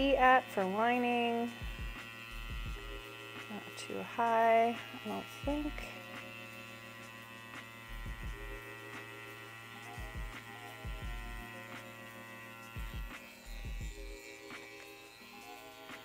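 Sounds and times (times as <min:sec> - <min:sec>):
tattoo pen buzzing hum: 0:00.0 - 0:16.0.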